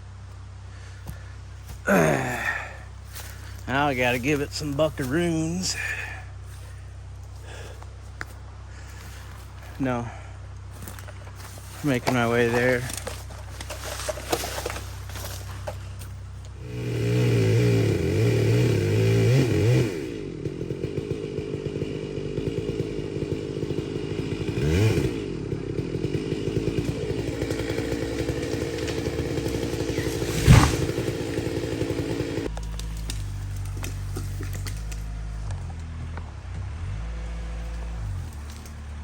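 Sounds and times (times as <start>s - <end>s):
chainsaw revving and idling: 0.0s - 39.0s.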